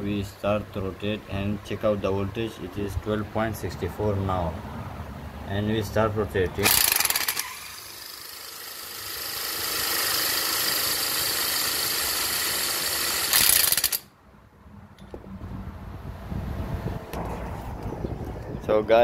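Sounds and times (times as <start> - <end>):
electric power tool motor whine: 6.6 - 14.0.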